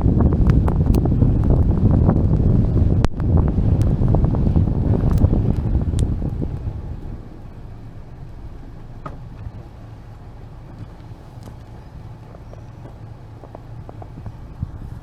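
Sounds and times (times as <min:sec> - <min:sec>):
car driving on snowy road: 0:00.0 - 0:15.0
faint clicks: 0:02.3 - 0:09.6.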